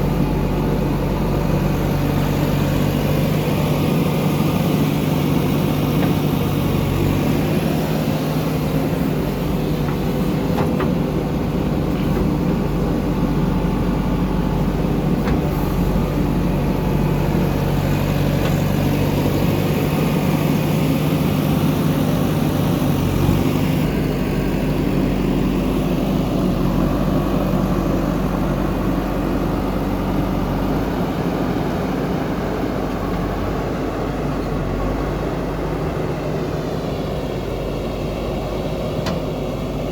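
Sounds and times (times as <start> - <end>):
backhoe digging mud: 0.0 - 39.9
heavy diesel engines under load: 0.0 - 39.9.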